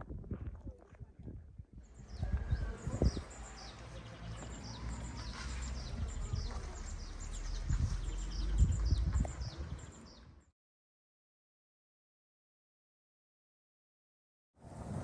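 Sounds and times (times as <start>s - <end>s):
small birds chirping: 1.8s - 10.5s.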